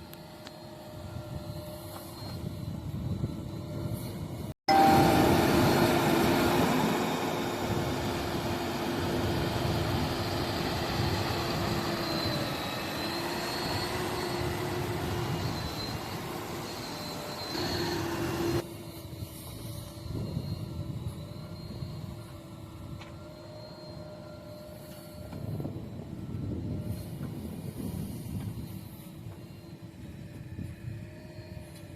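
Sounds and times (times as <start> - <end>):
steady whine: 0.0 - 31.9
diesel engines running: 4.7 - 18.6.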